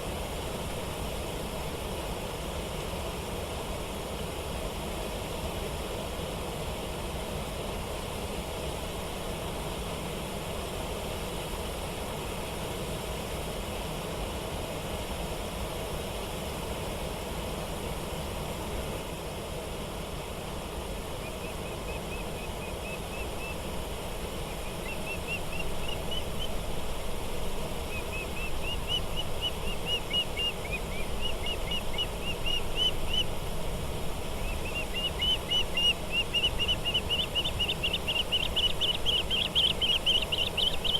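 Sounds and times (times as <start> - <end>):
flowing water rushing: 20.9 - 40.9
small bird chirping: 21.2 - 23.6, 24.4 - 26.6, 27.9 - 33.3, 34.3 - 40.9.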